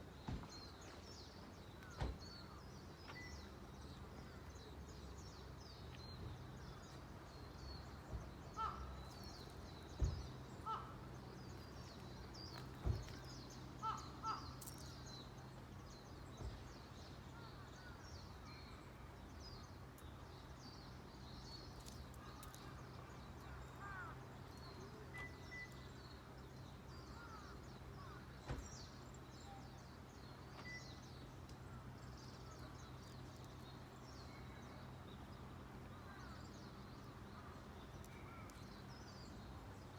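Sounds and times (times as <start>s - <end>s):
small birds chirping: 0.0s - 39.9s
crows cawing: 8.6s - 8.9s, 10.6s - 10.9s, 13.8s - 14.6s.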